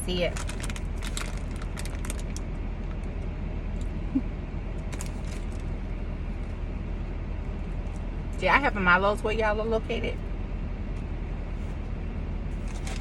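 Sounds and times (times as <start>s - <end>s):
steady low hum in car: 0.0s - 13.0s
food wrappers rustling: 0.3s - 2.5s, 4.9s - 5.7s, 12.6s - 13.0s.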